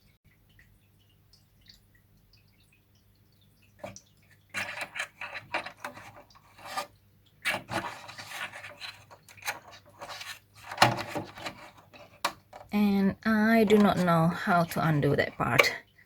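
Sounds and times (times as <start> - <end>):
plastic rubbing and scraping: 3.8 - 12.7, 13.4 - 15.7.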